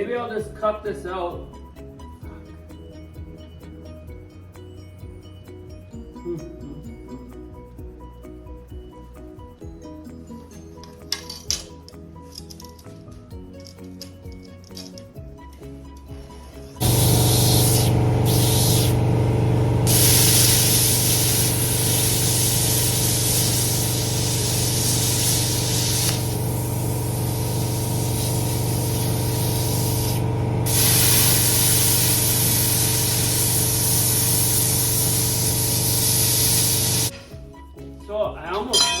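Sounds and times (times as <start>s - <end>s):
electrical hum: 16.8s - 37.1s
plasma cutter hissing: 16.8s - 37.1s.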